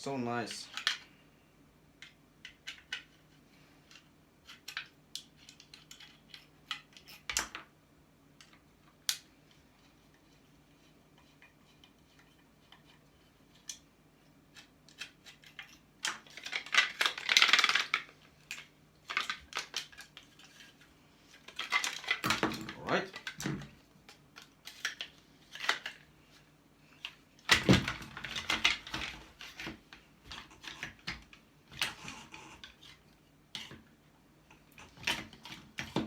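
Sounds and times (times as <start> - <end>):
metal and plastic parts clinking: 14.5 - 20.8, 21.4 - 26.1, 27.0 - 33.0.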